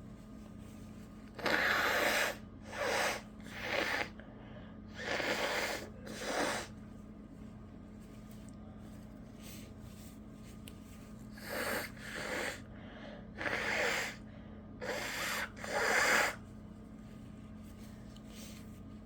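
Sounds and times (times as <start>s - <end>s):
person blowing nose: 1.4s - 4.1s, 5.0s - 6.7s, 11.4s - 12.6s, 13.4s - 14.2s, 14.8s - 16.4s.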